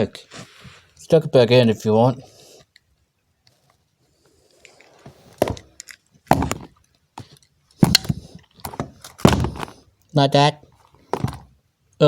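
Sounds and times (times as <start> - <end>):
small hard objects clacking: 5.4 - 9.8.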